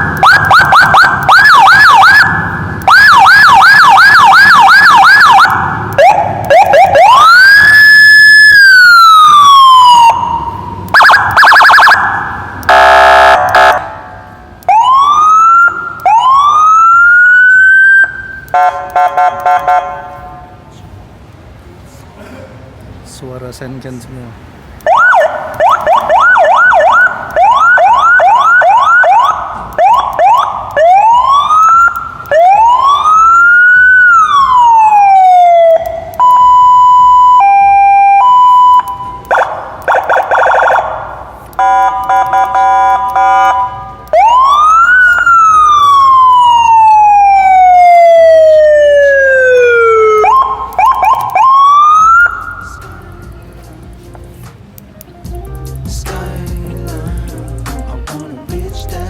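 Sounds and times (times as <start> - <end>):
electronic siren yelp and wail: 0.0 - 14.0, 14.7 - 19.8, 24.9 - 52.8.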